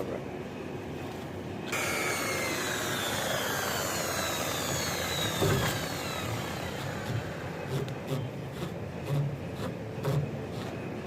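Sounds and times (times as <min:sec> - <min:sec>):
power tool high whine: 0:01.7 - 0:08.2.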